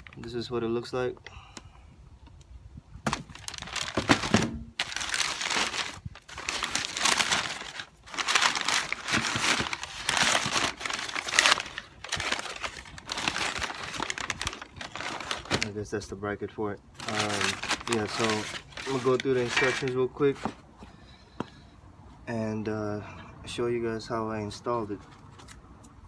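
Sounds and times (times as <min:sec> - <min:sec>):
packaging crinkling: 0:03.1 - 0:15.8, 0:17.0 - 0:20.0.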